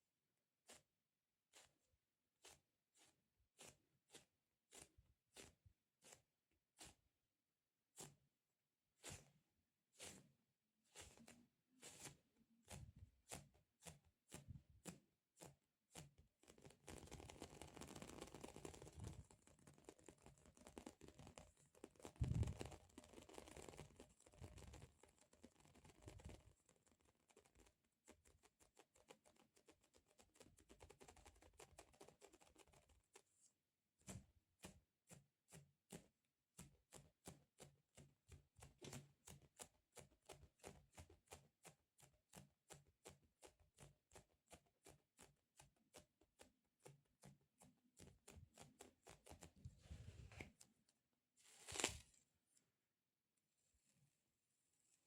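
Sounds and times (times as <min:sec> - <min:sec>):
rustling handling sound: 0:51.4 - 0:52.3.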